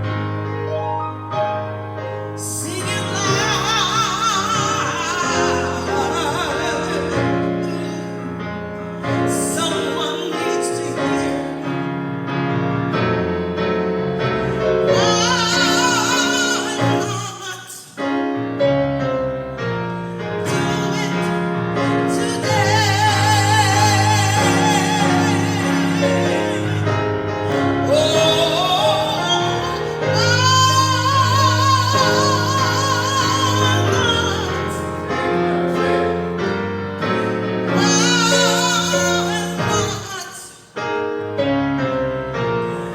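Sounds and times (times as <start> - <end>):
woman singing gospel: 2.4 - 8.1, 9.2 - 11.6, 14.9 - 18.0, 20.4 - 36.3, 37.6 - 40.6.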